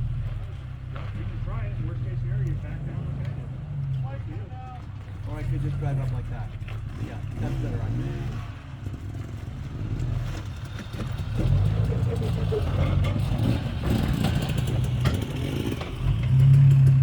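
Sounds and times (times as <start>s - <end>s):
engine pulling at low revs: 0.0s - 17.0s.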